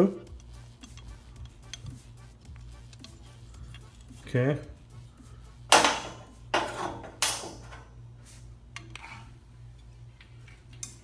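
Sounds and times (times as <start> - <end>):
metal parts clanking: 5.7 - 7.9.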